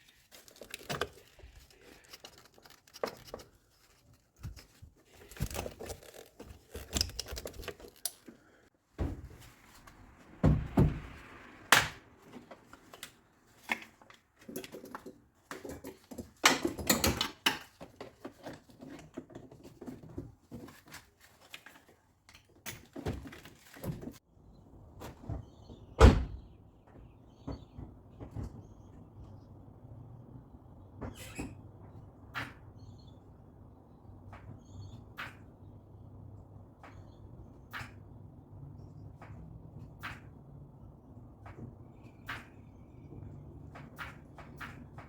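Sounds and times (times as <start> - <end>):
hand work on car parts: 0.0 - 10.0.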